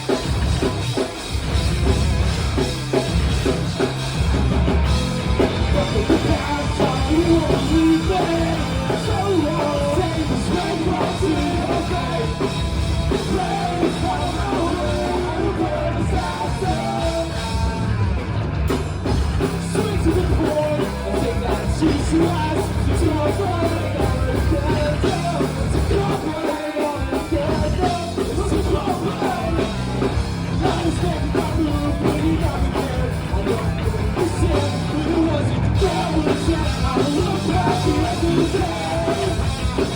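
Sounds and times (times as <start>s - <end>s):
bass guitar: 0.0s - 39.9s
drum kit: 0.0s - 39.9s
guitars: 0.0s - 39.9s
person singing: 5.7s - 17.8s, 30.6s - 39.9s.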